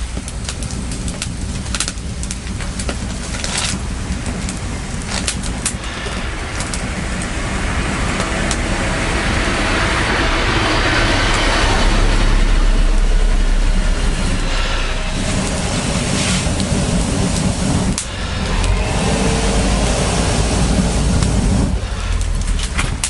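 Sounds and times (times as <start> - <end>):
road vehicle passing: 4.5 - 23.0.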